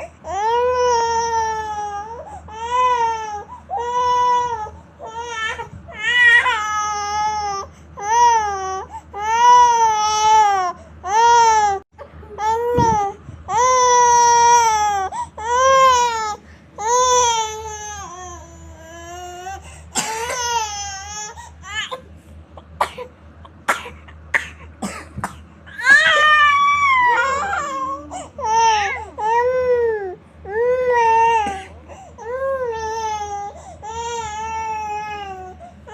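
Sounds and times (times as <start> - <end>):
baby coughing: 20.0 - 20.5, 21.8 - 25.4
baby crying: 25.7 - 35.6.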